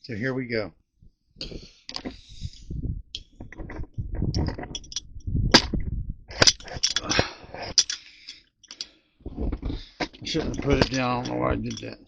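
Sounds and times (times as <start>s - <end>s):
sharp knocks and clatters: 3.2s - 8.0s, 8.7s - 12.0s.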